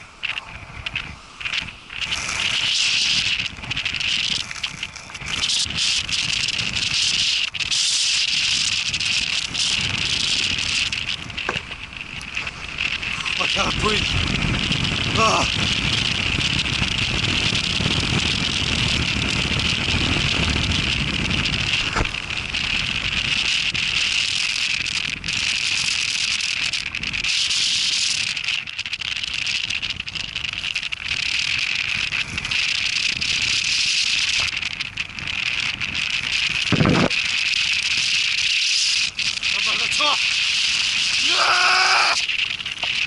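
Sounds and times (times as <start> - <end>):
rain hissing: 0.0 - 43.0
wind buffeting microphone: 0.0 - 43.0.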